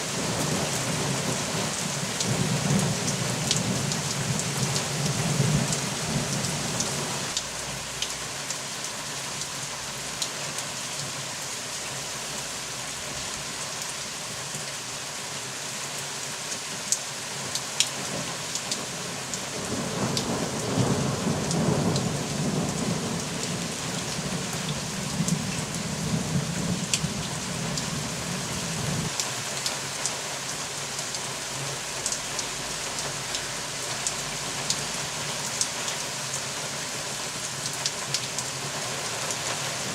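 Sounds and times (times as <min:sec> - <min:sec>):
steady rain: 0:00.0 - 0:39.9
sharp raindrops tapping: 0:00.3 - 0:11.2, 0:16.5 - 0:39.9
low rumble of thunder: 0:19.6 - 0:29.1.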